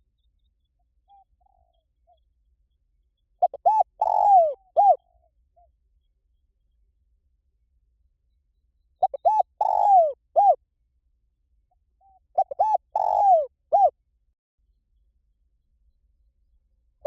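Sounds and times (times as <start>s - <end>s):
dove cooing: 3.4s - 5.2s, 9.0s - 10.6s, 12.0s - 14.0s.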